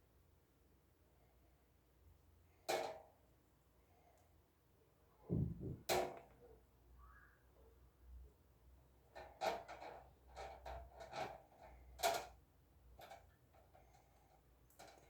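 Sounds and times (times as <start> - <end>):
fan parts clicking and knocking: 5.3 - 6.3.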